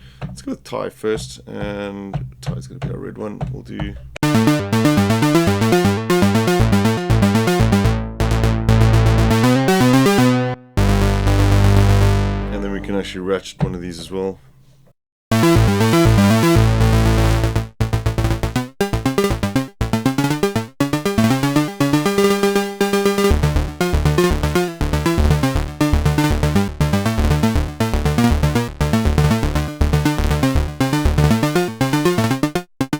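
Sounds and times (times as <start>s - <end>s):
deep synth bass: 4.2s - 13.1s, 15.3s - 32.9s
synthesizer arpeggio: 4.2s - 13.1s, 15.3s - 32.9s.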